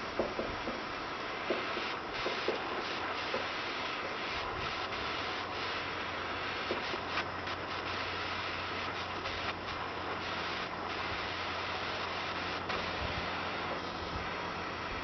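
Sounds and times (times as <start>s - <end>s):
propane torch hissing: 0.0s - 15.0s
wooden paddle rubbing solder: 1.5s - 5.9s.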